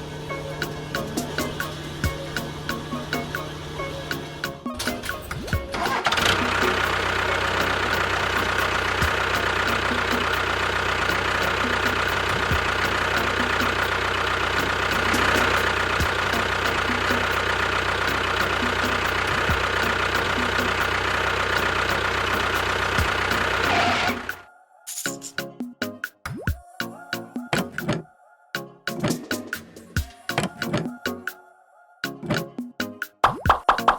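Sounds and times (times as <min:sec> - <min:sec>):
engine humming and whining: 0:00.0 - 0:24.5.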